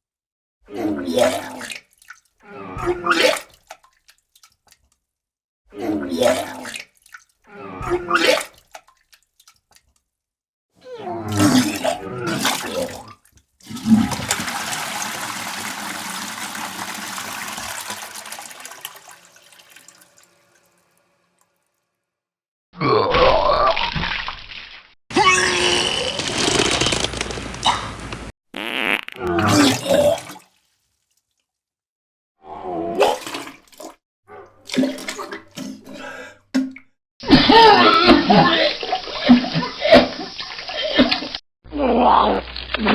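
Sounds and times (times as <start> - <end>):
person retching and vomiting: 11.2 - 14.7, 22.8 - 24.2, 25.1 - 27.8, 28.6 - 30.5, 33.0 - 33.6
liquid splashing into water: 11.3 - 21.0, 29.2 - 31.5
toilet flushing: 11.4 - 13.0, 13.6 - 21.2
person vomiting: 29.2 - 30.3.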